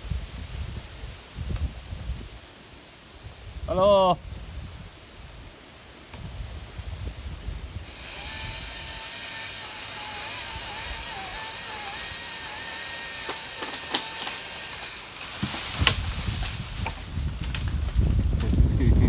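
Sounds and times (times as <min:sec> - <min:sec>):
wind buffeting microphone: 0:00.0 - 0:02.5, 0:03.2 - 0:12.7, 0:15.4 - 0:19.0
chainsaw running at high revs: 0:07.9 - 0:16.0
sharp crack: 0:07.9 - 0:18.6.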